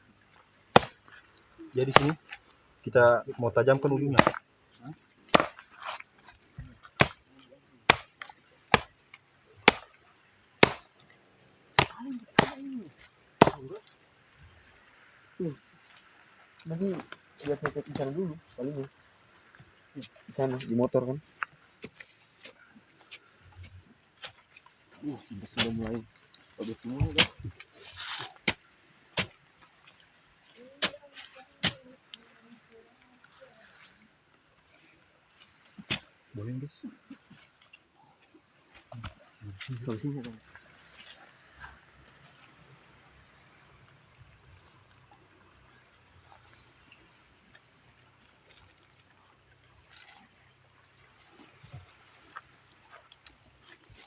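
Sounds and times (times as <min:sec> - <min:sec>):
crickets chirping: 0:00.0 - 0:54.0
blade chopping wooden stake: 0:00.7 - 0:01.0, 0:01.9 - 0:02.2, 0:04.2 - 0:04.4, 0:05.3 - 0:06.0, 0:07.0 - 0:07.2, 0:07.9 - 0:09.0, 0:09.6 - 0:09.9, 0:10.6 - 0:10.9, 0:11.8 - 0:12.6, 0:13.4 - 0:13.6, 0:27.0 - 0:27.5, 0:35.8 - 0:36.1
sharp knocks: 0:04.2 - 0:04.4, 0:05.3 - 0:05.5, 0:10.6 - 0:10.8, 0:13.4 - 0:13.6.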